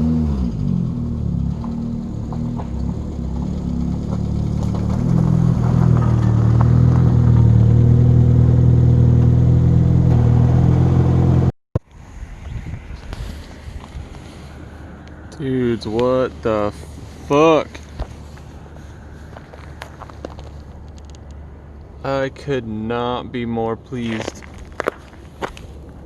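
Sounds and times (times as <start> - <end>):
car engine running: 0.0 - 11.5, 13.4 - 22.5.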